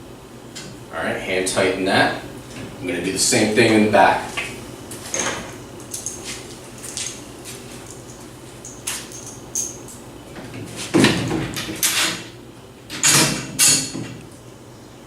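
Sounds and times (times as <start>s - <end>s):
metal parts clinking: 5.1s - 7.2s, 7.9s - 10.0s.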